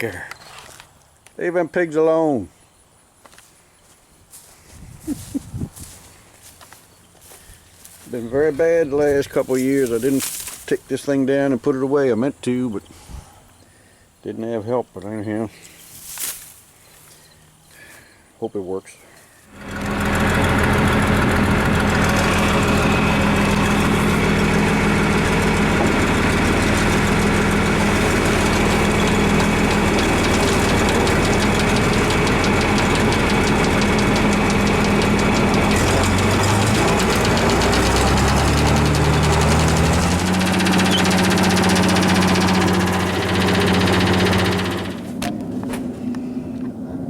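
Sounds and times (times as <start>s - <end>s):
tractor diesel engine running: 4.4s - 12.1s, 19.5s - 46.0s.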